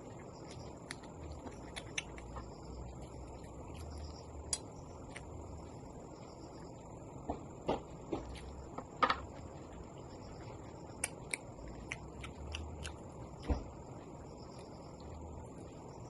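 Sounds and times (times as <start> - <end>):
wet chewing smacks: 0.1 - 5.8, 10.9 - 13.7.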